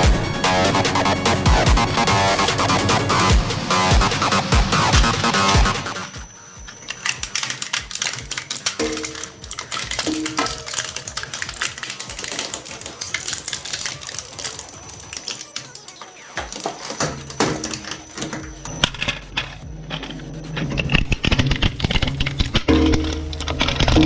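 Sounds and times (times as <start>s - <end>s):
shredder crackling and snapping: 4.7s - 18.7s.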